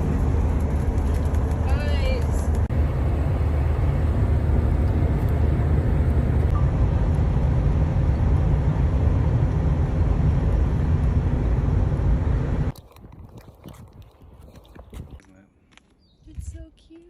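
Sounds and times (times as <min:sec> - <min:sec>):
vehicle driving rumble from inside: 0:00.0 - 0:12.8.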